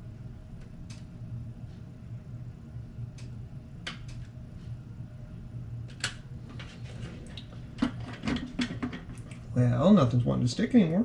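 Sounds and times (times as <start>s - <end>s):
low room hum: 0.0s - 11.0s.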